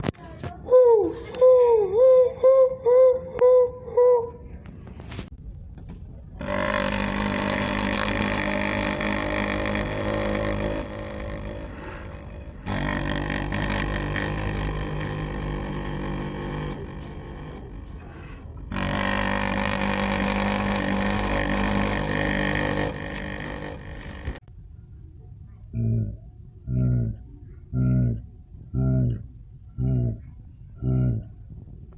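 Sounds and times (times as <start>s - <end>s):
deep droning monster calls: 6.4s - 24.4s, 25.7s - 31.5s.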